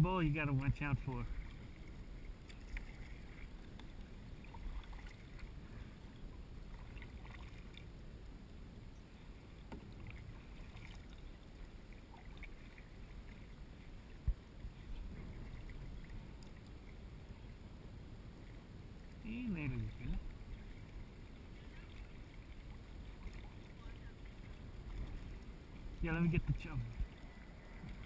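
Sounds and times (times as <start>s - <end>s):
wind and water rumble: 0.0s - 28.0s
water splashing and dripping: 1.4s - 5.5s, 6.7s - 7.8s, 12.0s - 13.4s.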